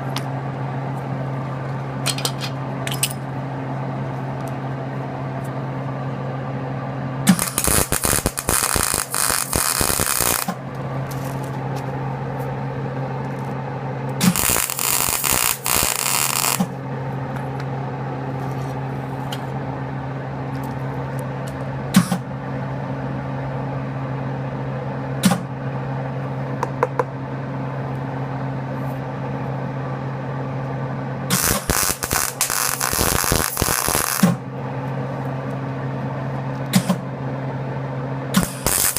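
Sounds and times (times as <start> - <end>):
steady electrical hum: 0.0 - 38.9
arc welder crackling: 7.3 - 12.0, 14.2 - 16.7, 31.3 - 34.4, 38.4 - 38.9.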